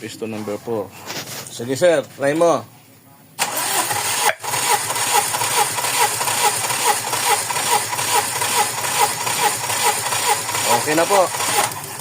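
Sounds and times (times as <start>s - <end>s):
engine cranking on starter: 3.4s - 12.0s.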